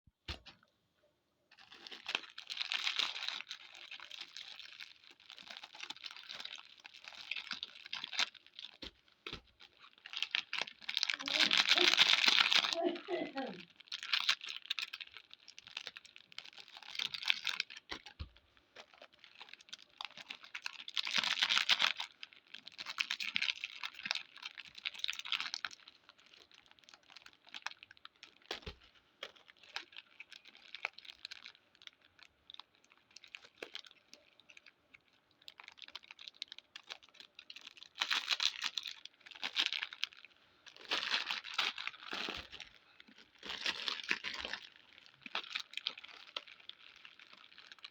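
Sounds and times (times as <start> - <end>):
plastic packets crinkling and tearing: 1.5 - 47.9.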